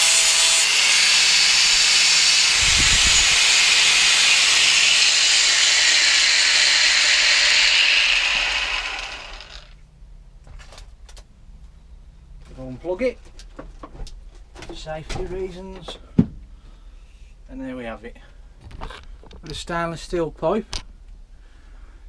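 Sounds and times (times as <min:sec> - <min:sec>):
angle grinder grinding metal: 0:00.0 - 0:09.7.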